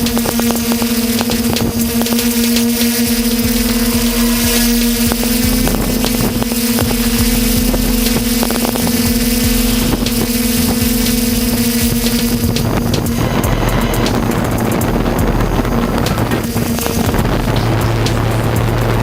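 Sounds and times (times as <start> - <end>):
drone propellers humming: 0.0 - 19.0
rushing air: 0.0 - 19.0.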